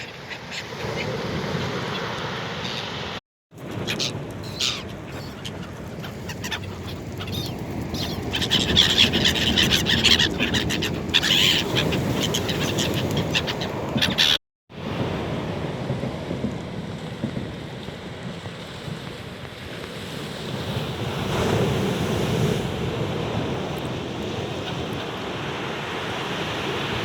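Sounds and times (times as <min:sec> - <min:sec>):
seagulls calling: 0:00.0 - 0:03.0, 0:03.6 - 0:14.4
rush of surf: 0:00.0 - 0:13.9, 0:14.7 - 0:27.0
wind: 0:00.0 - 0:27.0.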